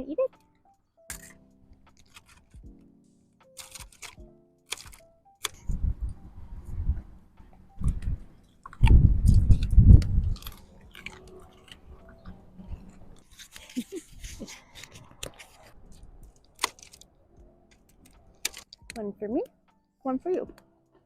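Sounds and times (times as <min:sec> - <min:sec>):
dog chewing carrot: 0:08.6 - 0:13.3.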